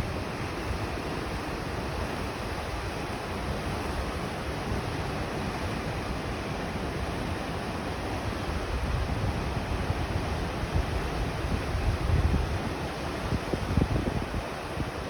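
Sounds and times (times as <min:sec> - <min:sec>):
wind buffeting microphone: 0:08.7 - 0:15.0.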